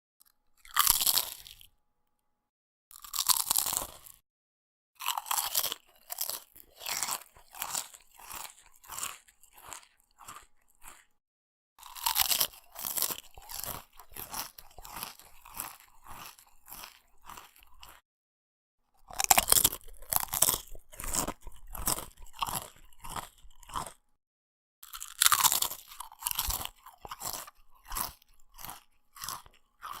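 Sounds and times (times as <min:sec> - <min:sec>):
person crunching potato chips: 0:00.6 - 0:01.7, 0:02.9 - 0:04.2, 0:05.0 - 0:11.2, 0:11.8 - 0:18.0, 0:19.0 - 0:24.0, 0:24.8 - 0:30.0.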